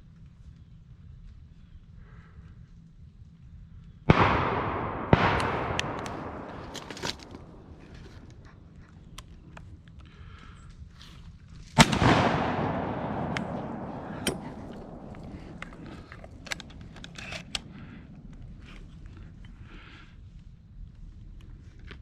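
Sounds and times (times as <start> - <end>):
shotgun shot: 4.1 - 8.5, 11.8 - 18.0.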